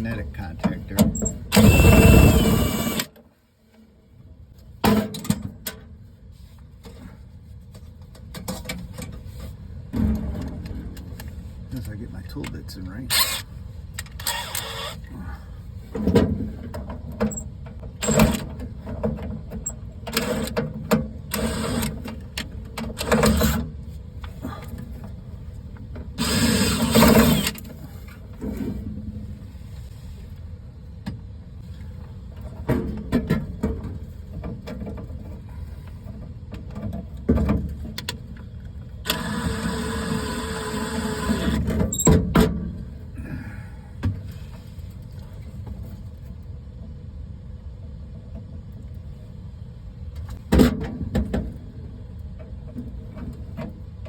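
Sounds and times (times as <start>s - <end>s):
power driver spinning: 1.5s - 3.1s.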